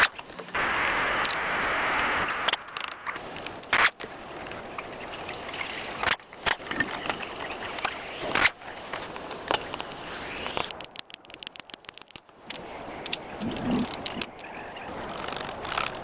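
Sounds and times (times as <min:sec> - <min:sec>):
steady hiss: 0:00.0 - 0:10.7
tool clicks and knocks: 0:08.3 - 0:14.4.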